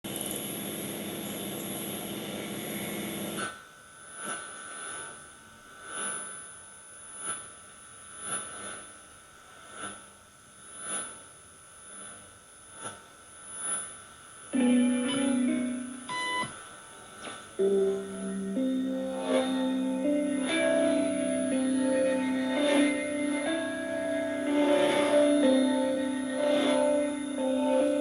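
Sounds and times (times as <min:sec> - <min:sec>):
shortwave radio hiss: 0:13.4 - 0:28.0
keyboard music: 0:14.6 - 0:16.5, 0:17.6 - 0:28.0
steady radio whistle: 0:16.1 - 0:16.6.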